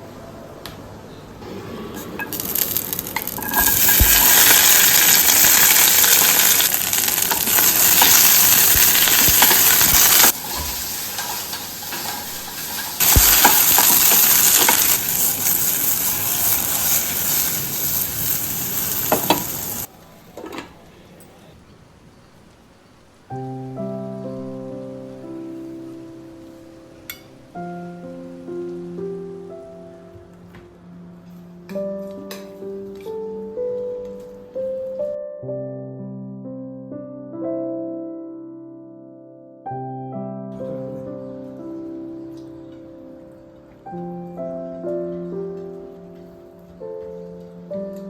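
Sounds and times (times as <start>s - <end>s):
food sizzling in a pan: 2.3s - 19.9s.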